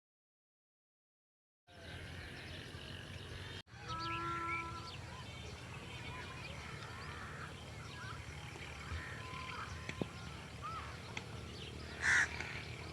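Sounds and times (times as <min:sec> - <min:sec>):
small birds chirping: 0:01.7 - 0:12.9
held animal call: 0:03.8 - 0:05.2.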